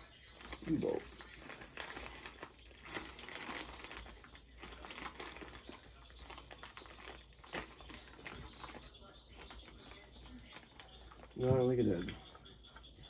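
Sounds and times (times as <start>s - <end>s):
small metal parts rattling: 0.3s - 11.6s.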